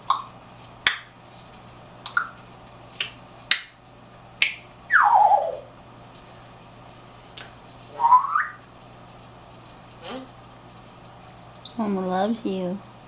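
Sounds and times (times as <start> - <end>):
parrot falling call: 4.9 - 5.7, 8.0 - 8.6.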